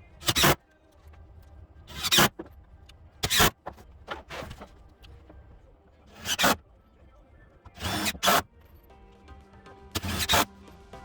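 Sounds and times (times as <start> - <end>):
power drill driving screws: 7.8 - 8.4, 10.0 - 10.5.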